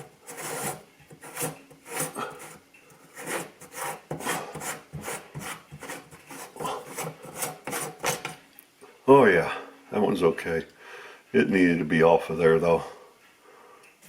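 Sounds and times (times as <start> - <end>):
scraping and rubbing strokes on metal: 0.0 - 8.4.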